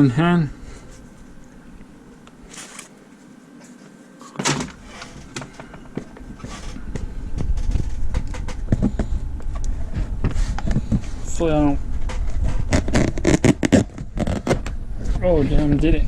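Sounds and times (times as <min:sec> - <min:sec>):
cardboard rubbing and bumping: 0:02.4 - 0:03.3, 0:04.4 - 0:09.2, 0:12.2 - 0:14.7
cardboard box scraping: 0:02.5 - 0:03.0, 0:06.4 - 0:06.8, 0:12.6 - 0:14.6.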